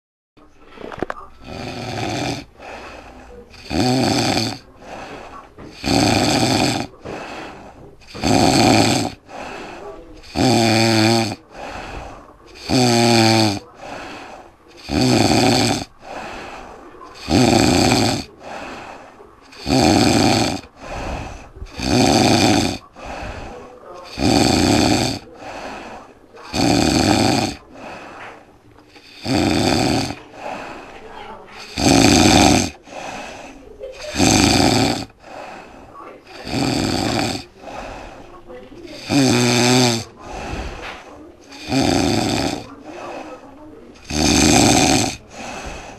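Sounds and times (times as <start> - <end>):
quiet breaths: 0.4 - 45.9
man snoring loudly: 1.4 - 2.9, 3.5 - 4.7, 5.7 - 7.4, 8.1 - 9.6, 10.2 - 11.7, 12.6 - 14.2, 14.8 - 16.4, 17.2 - 18.8, 19.6 - 22.8, 24.0 - 25.6, 26.5 - 27.6, 29.0 - 30.7, 31.7 - 33.3, 34.0 - 35.6, 36.2 - 38.0, 39.0 - 40.8, 41.6 - 42.7, 44.0 - 45.8.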